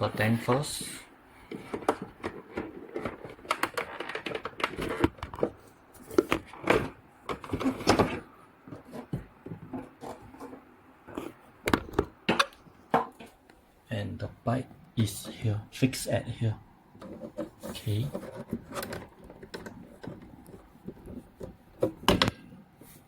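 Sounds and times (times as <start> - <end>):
plastic clicks knocks and scrapes: 1.5 - 13.4, 17.0 - 22.6.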